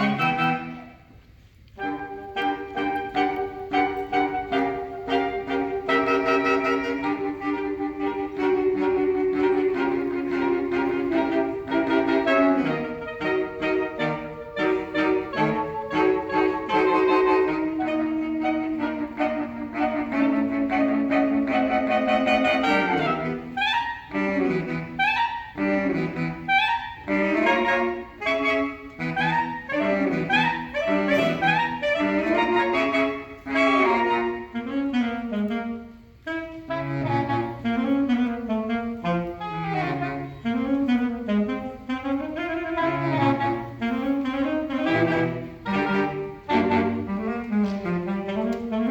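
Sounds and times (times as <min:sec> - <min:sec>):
saxophone quartet playing: 0:00.0 - 0:48.9.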